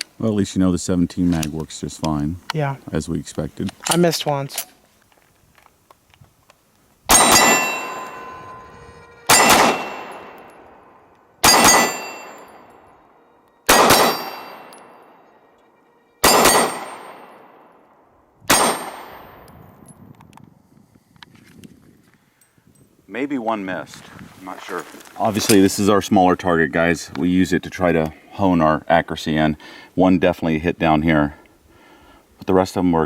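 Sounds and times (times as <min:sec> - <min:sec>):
pistol shots echoing: 0:07.1 - 0:08.5, 0:09.2 - 0:12.8, 0:13.7 - 0:15.2, 0:16.2 - 0:17.8, 0:18.5 - 0:19.4.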